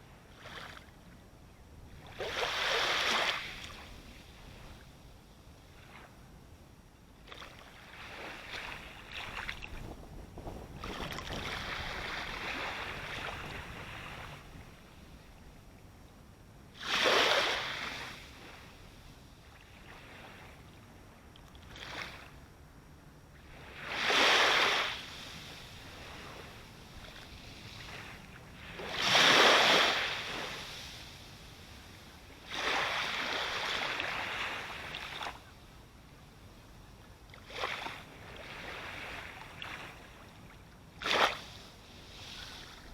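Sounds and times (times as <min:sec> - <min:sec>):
sea waves breaking on shore: 0:02.0 - 0:04.8, 0:07.3 - 0:15.0, 0:16.8 - 0:20.6, 0:23.4 - 0:35.6, 0:37.4 - 0:42.9.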